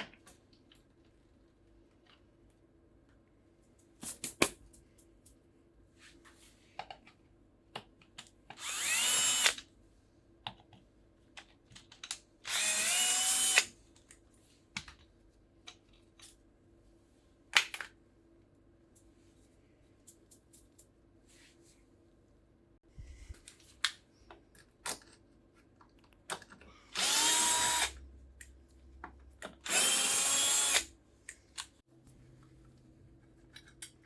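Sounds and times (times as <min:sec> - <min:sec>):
cordless drill spinning: 0:08.6 - 0:09.6, 0:12.4 - 0:13.7, 0:26.9 - 0:28.0, 0:29.6 - 0:30.9.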